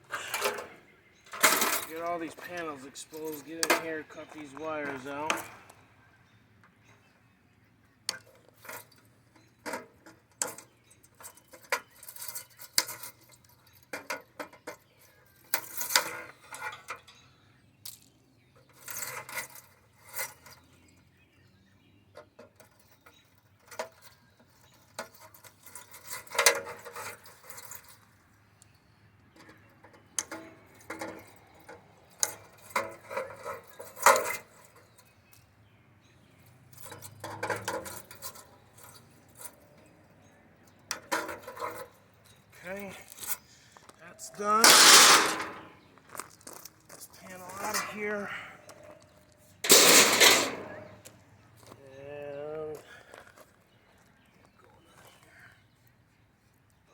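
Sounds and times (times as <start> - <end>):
metal clanks: 0.1 - 5.6, 44.4 - 45.8, 49.6 - 51.1
hand tools clicking and snipping: 44.4 - 45.7, 49.6 - 51.0.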